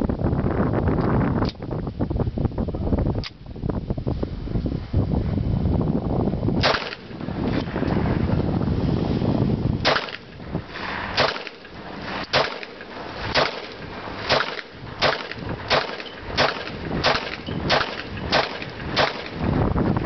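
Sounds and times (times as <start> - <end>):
low rumble: 0.0 - 20.0
gunshots: 6.6 - 7.3, 9.8 - 19.5.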